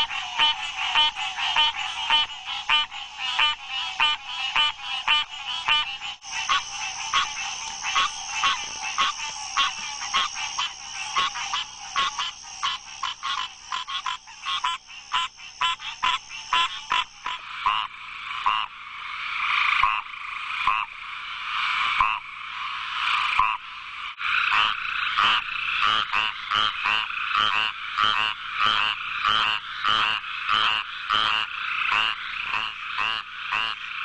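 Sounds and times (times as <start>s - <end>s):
frogs croaking: 0.0s - 34.0s
high-pitched frog chorus: 0.0s - 34.0s.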